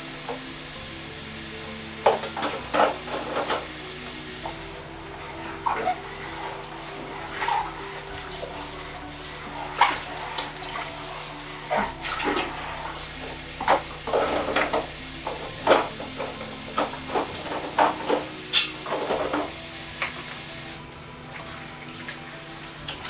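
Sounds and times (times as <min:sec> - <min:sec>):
tap water running into sink: 0:00.0 - 0:23.0
cookware clattering in sink: 0:01.7 - 0:04.7, 0:09.7 - 0:20.8.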